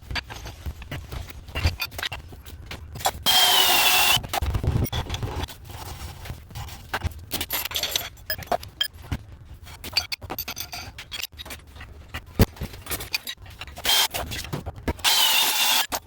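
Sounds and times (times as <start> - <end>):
power drill whining: 3.3 - 4.2, 15.0 - 15.9.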